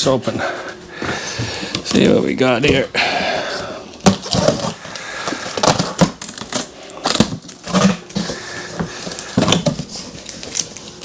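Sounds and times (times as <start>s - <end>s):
packing rustling: 1.0s - 11.0s
packing knocks and clicks: 3.9s - 11.0s.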